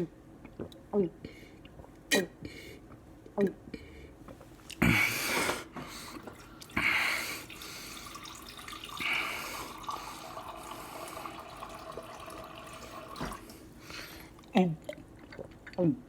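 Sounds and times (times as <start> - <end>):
water gushing: 6.1 - 14.2
water trickling: 6.1 - 15.8.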